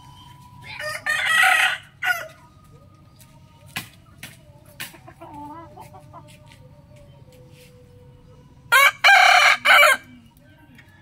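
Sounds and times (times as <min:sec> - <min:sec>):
rooster crowing: 0:00.7 - 0:02.4, 0:08.7 - 0:10.1.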